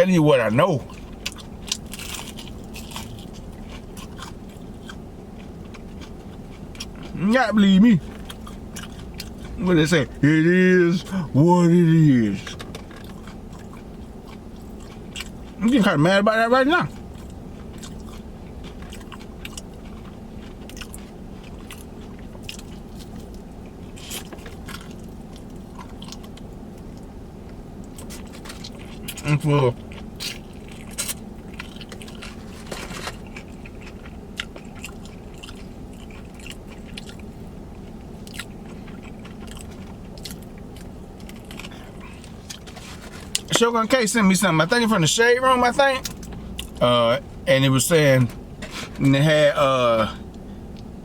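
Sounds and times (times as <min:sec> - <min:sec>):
chewing crunchy food: 0:00.8 - 0:10.0, 0:12.1 - 0:15.9, 0:16.8 - 0:43.7, 0:46.0 - 0:46.9.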